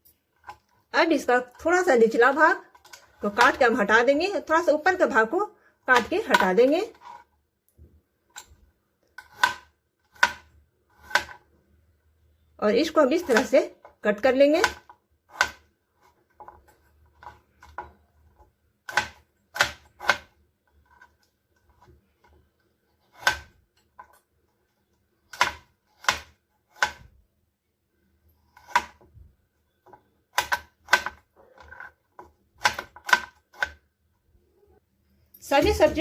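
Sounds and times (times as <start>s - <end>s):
knife chopping on board: 9.2s - 11.4s, 18.9s - 20.3s, 23.1s - 23.5s, 25.4s - 27.1s.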